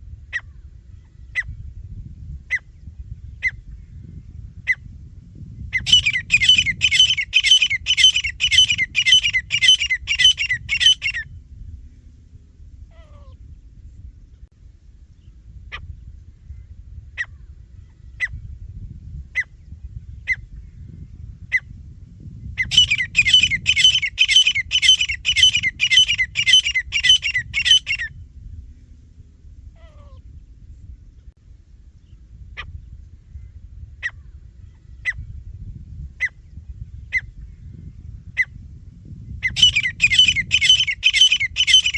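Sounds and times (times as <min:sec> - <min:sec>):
low background rumble: 0:00.0 - 0:41.9
francolin calling: 0:05.8 - 0:11.2, 0:22.6 - 0:28.1, 0:39.4 - 0:41.9.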